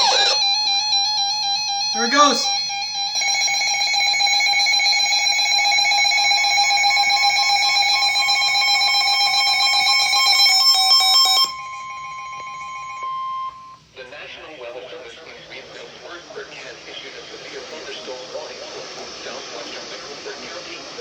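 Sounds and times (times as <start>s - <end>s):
single alarm tone: 0.0s - 13.9s
two-tone alarm: 0.0s - 13.9s.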